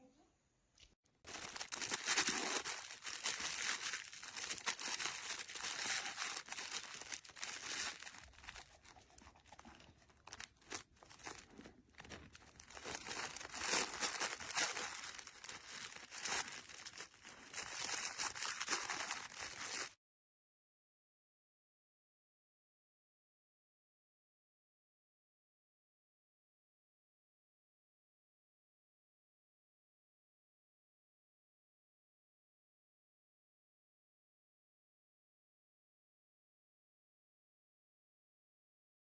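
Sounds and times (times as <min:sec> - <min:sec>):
snuffle toy crinkling and rustling: 0:01.3 - 0:20.0.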